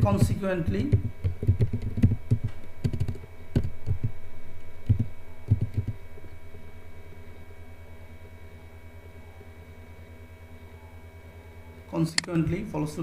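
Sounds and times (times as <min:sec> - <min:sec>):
steady low hum: 0:00.0 - 0:13.0
keyboard keys clicking: 0:00.2 - 0:04.0, 0:04.9 - 0:06.0.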